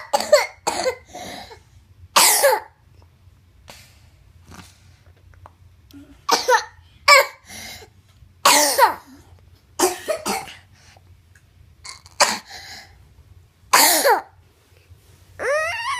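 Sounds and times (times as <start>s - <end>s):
person coughing: 0.0s - 1.6s, 2.2s - 2.7s, 6.3s - 7.4s, 8.5s - 9.2s, 9.8s - 10.7s, 11.9s - 12.5s, 13.8s - 14.3s.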